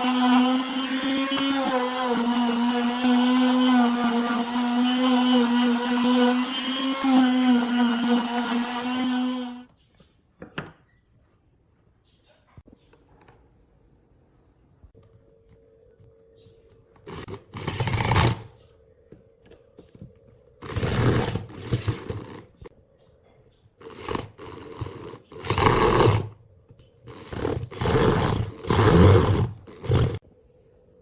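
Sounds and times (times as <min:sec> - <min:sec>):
power tool cutting wood: 0:00.0 - 0:09.7, 0:17.1 - 0:18.5, 0:20.6 - 0:22.5, 0:23.8 - 0:26.3, 0:27.1 - 0:30.2.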